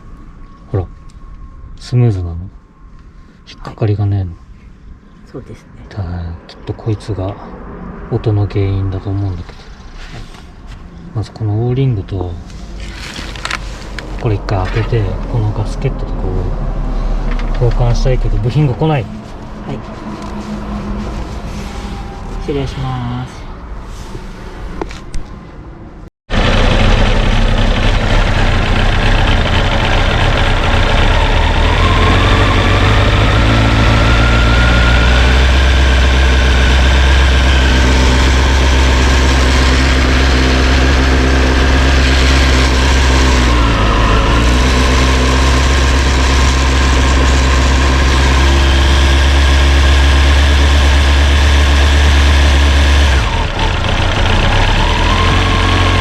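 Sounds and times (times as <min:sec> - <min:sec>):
motorcycle engine idling: 0:26.3 - 0:33.3, 0:35.6 - 0:56.0
high-pitched whine: 0:26.4 - 0:56.0.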